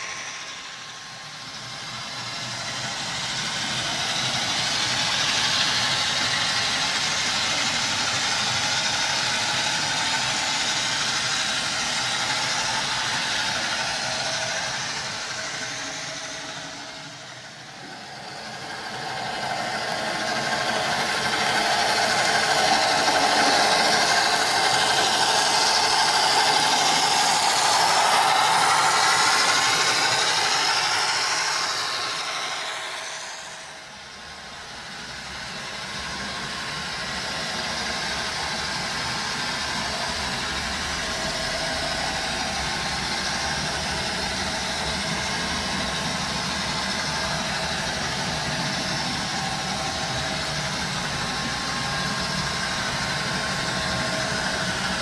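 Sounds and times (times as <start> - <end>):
engine running: 12.4 - 34.1.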